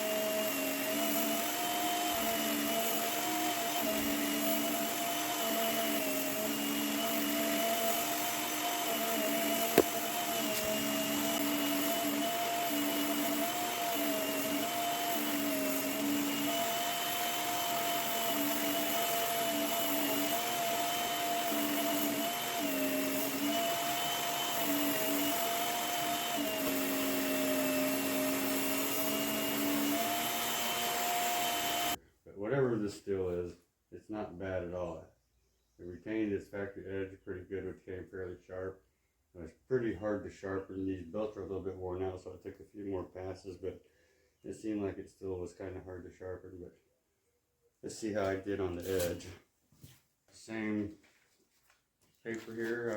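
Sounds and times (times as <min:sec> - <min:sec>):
belt sharpener motor whine: 0:00.0 - 0:32.0.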